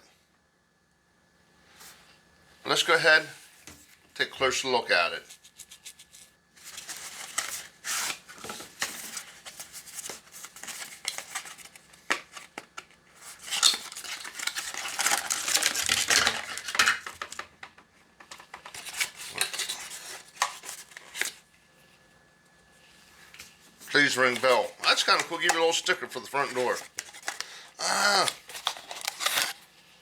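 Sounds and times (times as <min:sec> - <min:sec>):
packaging clicks and rustles: 0:05.4 - 0:21.5, 0:24.0 - 0:29.7.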